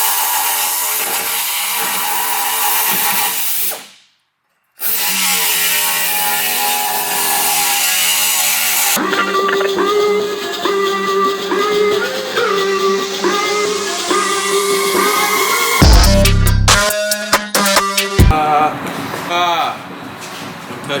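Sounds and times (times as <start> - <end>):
power tool cutting metal: 0.0 - 3.8, 4.8 - 9.7.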